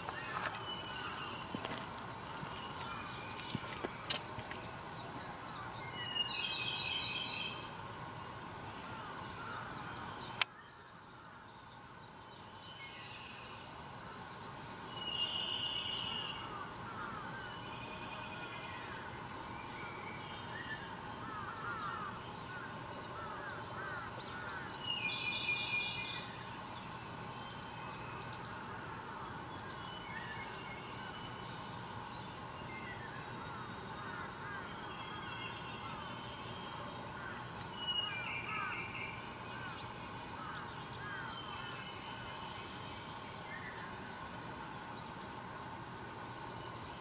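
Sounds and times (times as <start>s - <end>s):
birds chirping: 0.0s - 10.5s.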